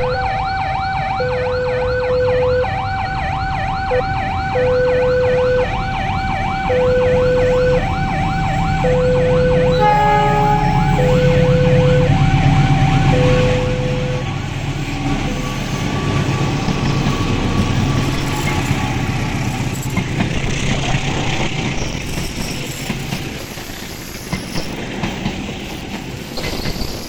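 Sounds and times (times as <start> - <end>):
low rumble: 0.0 - 3.1
level crossing warning siren: 0.0 - 22.3
chord-like horn blast: 9.5 - 14.3.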